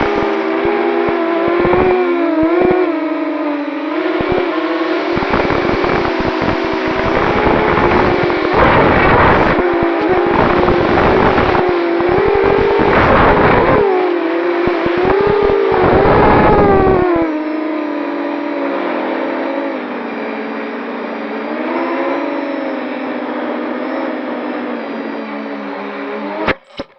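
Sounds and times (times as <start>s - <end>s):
wind rumbling on microphone: 0.0s - 18.8s
drone motors whining: 0.0s - 26.9s.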